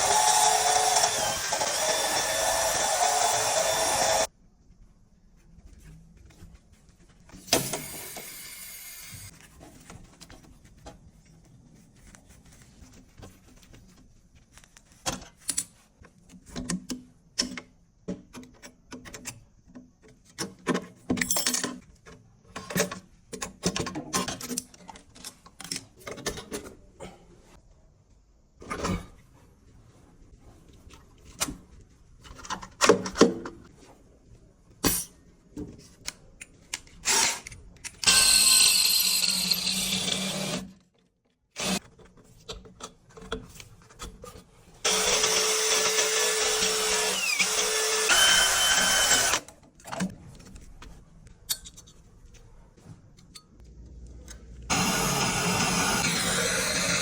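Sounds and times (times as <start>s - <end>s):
tools and metal parts clinking: 20.7s - 26.8s, 51.4s - 52.1s.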